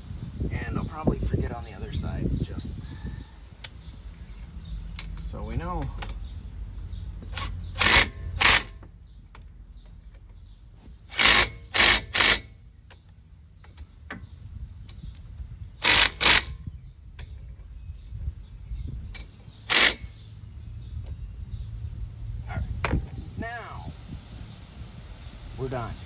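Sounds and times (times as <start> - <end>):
power tool bursts: 7.3 - 8.8, 11.1 - 12.5, 15.8 - 16.6, 19.7 - 20.2.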